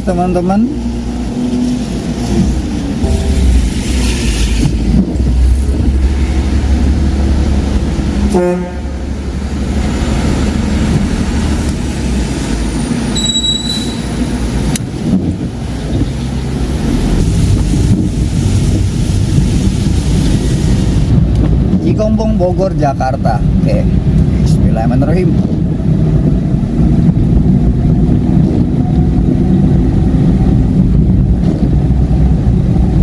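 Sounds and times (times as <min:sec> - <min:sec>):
car interior road rumble: 0:00.0 - 0:13.2, 0:14.1 - 0:33.0
short high electronic beep: 0:03.0 - 0:04.4, 0:13.2 - 0:14.1.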